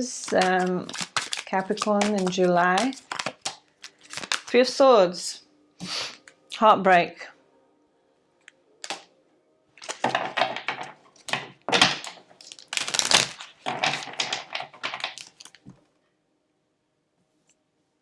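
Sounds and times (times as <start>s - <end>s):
cards being shuffled: 0.0s - 4.6s, 8.8s - 9.1s, 9.8s - 15.8s.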